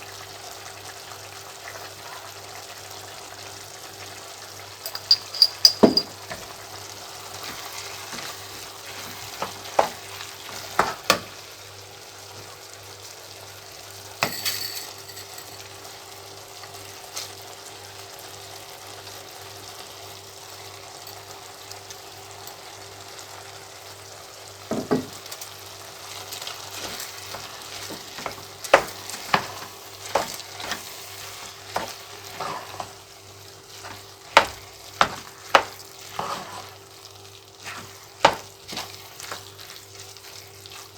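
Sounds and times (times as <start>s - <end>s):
food sizzling in a frying pan: 0.0s - 14.4s, 15.0s - 40.9s
utensil knocking and scraping: 4.9s - 6.4s.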